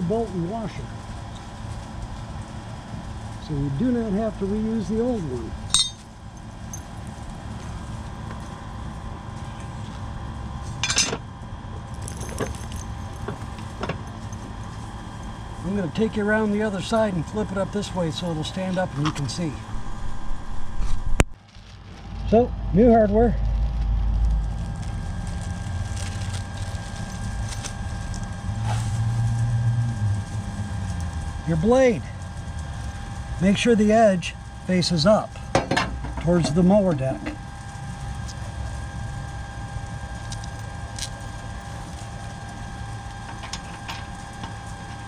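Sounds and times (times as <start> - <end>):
low machine hum: 0.0 - 45.0
metal hardware clinking: 5.7 - 6.1
low rumble: 11.3 - 33.5
thin steady tones: 11.9 - 19.7, 24.3 - 45.0.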